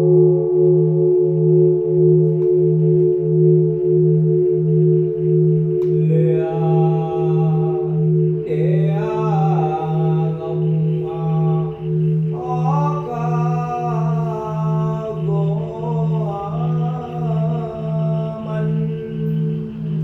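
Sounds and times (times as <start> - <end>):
singing bowl hum: 0.0 - 20.0
person chanting: 5.8 - 20.0.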